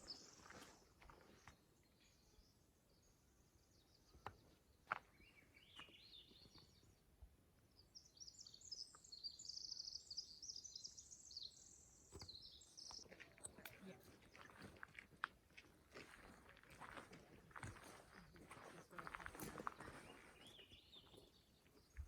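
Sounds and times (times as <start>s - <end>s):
songbird singing: 0.0s - 14.6s, 16.1s - 22.0s.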